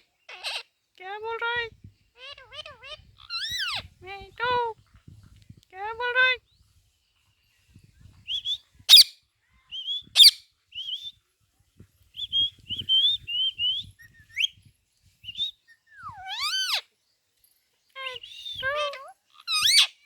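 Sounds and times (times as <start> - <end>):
parrot chirping and whistling: 9.8 - 11.1, 15.3 - 16.8, 18.2 - 19.9
parrot shrieks: 18.8 - 20.0.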